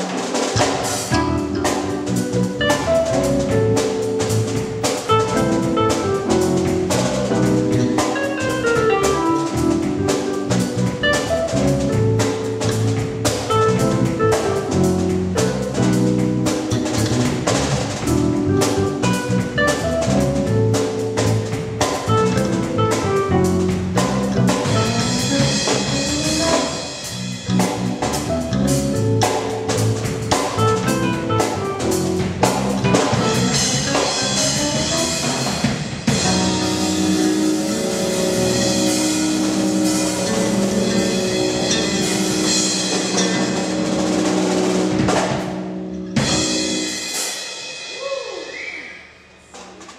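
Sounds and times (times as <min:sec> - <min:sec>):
band playing gospel groove: 0:00.0 - 0:48.4
busy drum kit: 0:00.0 - 0:49.9
cymbal-heavy drum break: 0:23.4 - 0:30.9, 0:31.9 - 0:45.6, 0:46.2 - 0:48.6.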